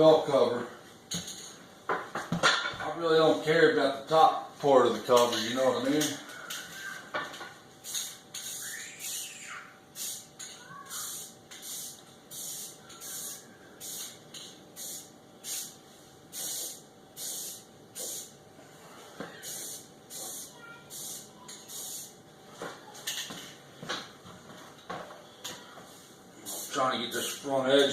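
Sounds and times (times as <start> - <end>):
spray can hissing: 7.8 - 9.3, 10.0 - 10.3, 10.9 - 14.2, 14.8 - 18.4, 19.4 - 22.2, 26.4 - 26.8.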